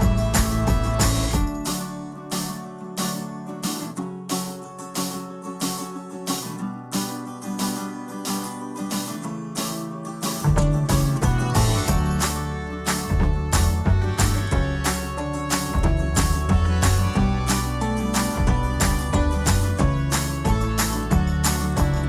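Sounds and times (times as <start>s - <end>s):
bass: 0.0s - 2.2s, 10.3s - 22.0s
strummed acoustic guitar: 0.0s - 22.0s.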